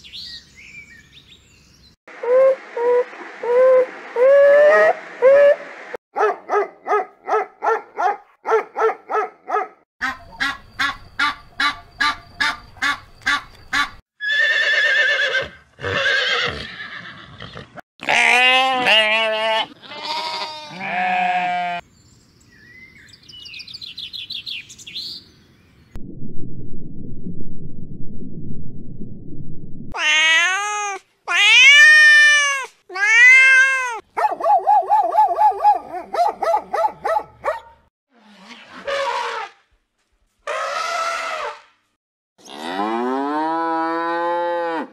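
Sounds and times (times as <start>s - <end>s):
low rumbling noise: 26.0s - 30.0s.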